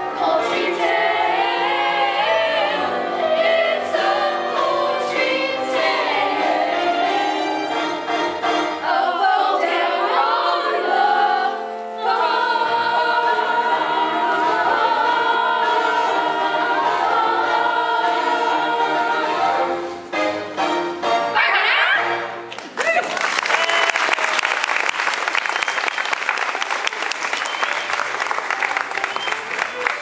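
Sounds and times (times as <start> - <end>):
choir singing sustained chords: 0.0 - 20.0
musical accompaniment: 0.0 - 22.8.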